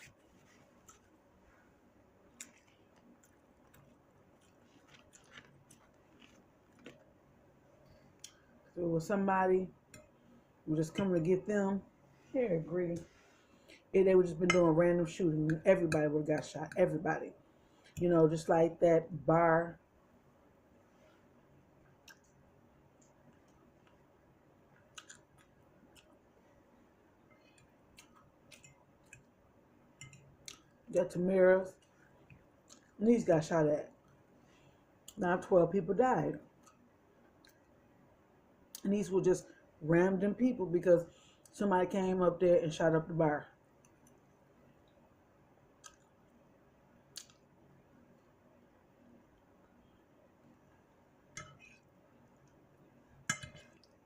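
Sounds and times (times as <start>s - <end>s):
chewing and wet mouth clicks: 22.0s - 22.4s, 24.8s - 26.2s, 32.3s - 33.0s, 45.8s - 46.1s, 47.1s - 47.5s.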